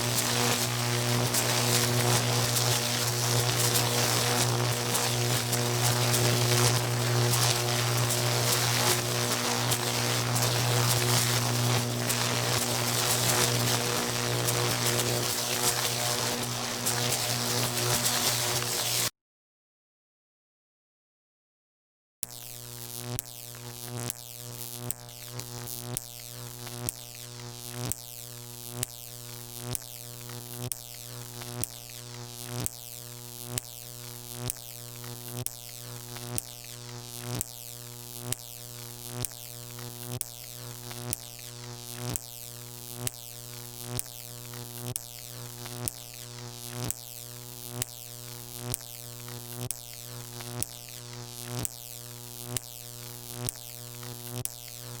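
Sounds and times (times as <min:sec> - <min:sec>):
electrical arc hum and crackle: 0:00.0 - 0:19.1, 0:22.2 - 0:55.0
sharp arc snaps: 0:00.0 - 0:19.1.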